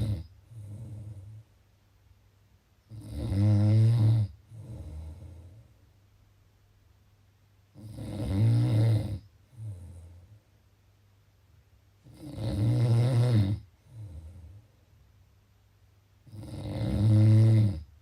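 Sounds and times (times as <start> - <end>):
loud rattling snores: 0.0 - 1.4, 2.9 - 5.6, 7.8 - 10.1, 12.0 - 14.5, 16.3 - 17.9.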